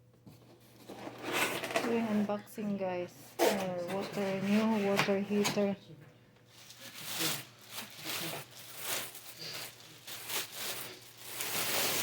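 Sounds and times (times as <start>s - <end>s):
packaging rustling and tearing: 6.5s - 12.0s.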